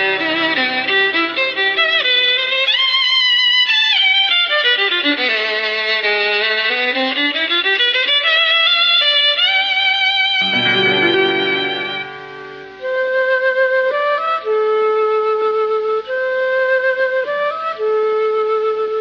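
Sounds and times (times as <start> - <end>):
violin slow melody: 0.0 - 14.6.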